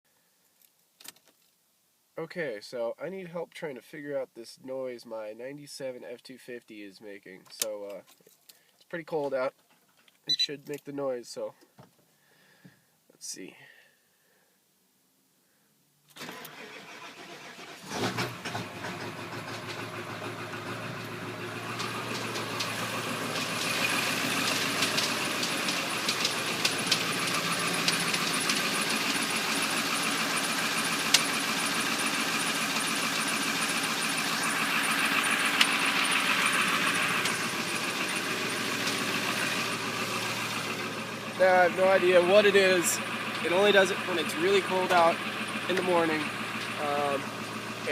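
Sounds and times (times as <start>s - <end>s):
diesel engine cranking and starting: 16.1s - 47.9s
diesel engine idling with tapping: 16.3s - 47.9s.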